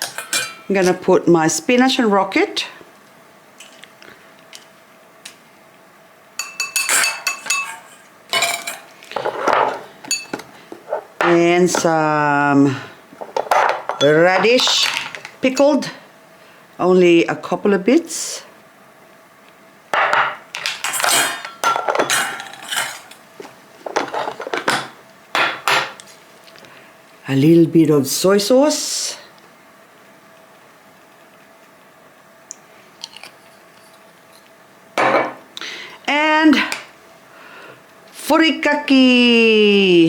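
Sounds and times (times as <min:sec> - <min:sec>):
cutlery clinking against dishware: 0:00.0 - 0:01.0, 0:06.4 - 0:10.4, 0:20.0 - 0:23.2.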